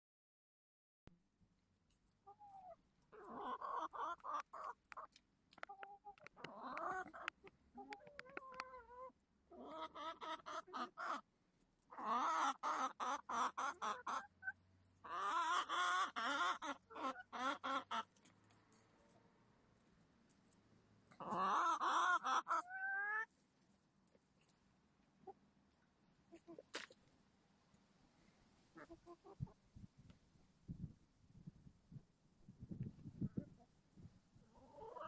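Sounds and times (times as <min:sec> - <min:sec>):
chickens clucking: 0:02.2 - 0:11.3, 0:11.9 - 0:19.2, 0:21.1 - 0:23.3, 0:25.2 - 0:25.4, 0:26.2 - 0:27.0, 0:28.6 - 0:29.9, 0:34.4 - 0:35.0.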